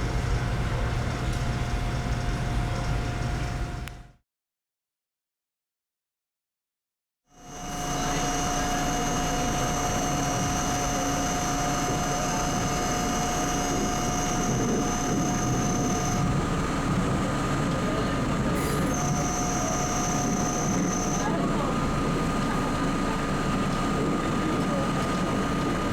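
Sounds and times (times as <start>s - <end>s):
subway train rumbling: 0.0s - 4.1s, 7.4s - 25.9s
high ringing tones: 7.4s - 16.7s, 18.9s - 21.4s.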